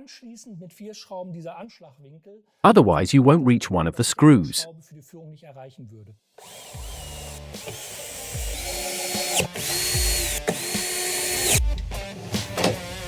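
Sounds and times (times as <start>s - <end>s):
cordless drill driving screws: 6.4s - 11.6s.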